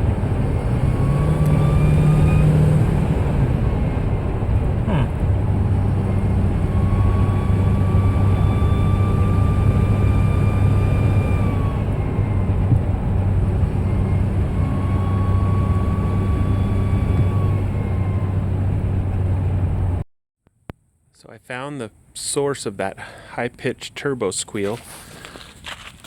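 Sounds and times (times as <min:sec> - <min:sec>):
diesel pickup engine drone: 0:00.0 - 0:20.0.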